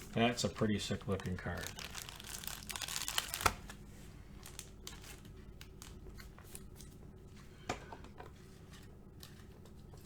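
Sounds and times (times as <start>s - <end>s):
steady low hum: 0.0s - 10.0s
cards and plastic holders rustling: 0.6s - 3.8s.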